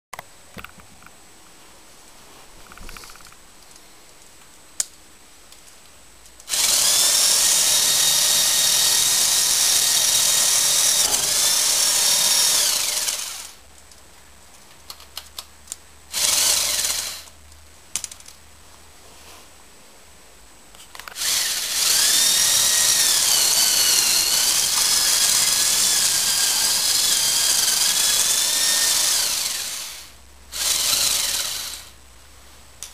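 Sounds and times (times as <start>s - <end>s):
toy chainsaw electric whine: 6.5s - 13.6s, 16.1s - 17.3s, 21.1s - 31.9s.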